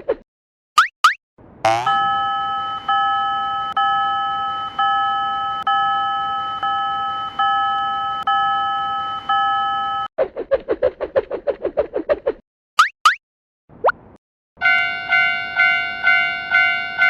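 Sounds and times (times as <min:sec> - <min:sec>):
electronic alarm chime: 0:01.7 - 0:10.1.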